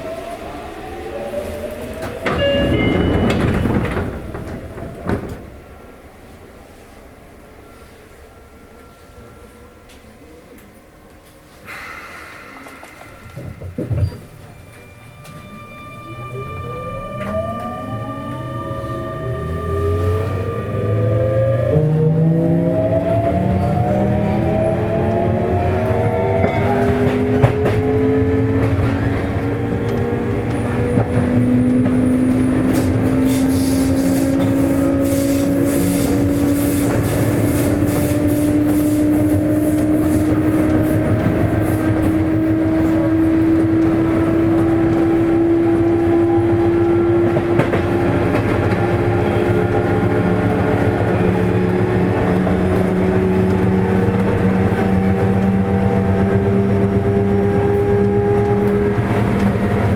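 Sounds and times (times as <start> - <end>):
wheel and rail rumble: 0.0 - 59.9
train motor whine: 13.3 - 59.9
wheels clicking on rails: 23.4 - 59.9.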